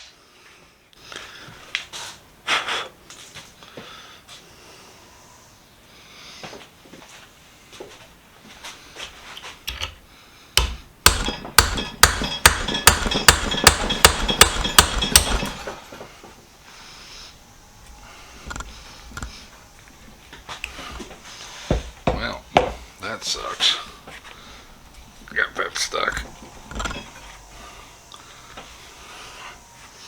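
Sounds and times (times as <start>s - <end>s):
hammer on metal punch: 10.6s - 15.8s, 21.7s - 22.8s
handling knocks: 10.6s - 16.4s, 20.8s - 23.0s.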